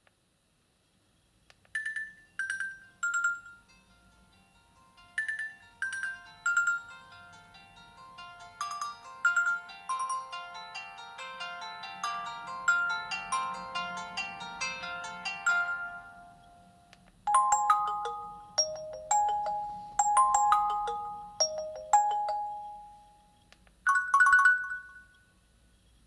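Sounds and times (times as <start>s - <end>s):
bell-like ringtone melody: 1.8s - 25.3s
tinkling ringtone melody: 1.8s - 25.4s.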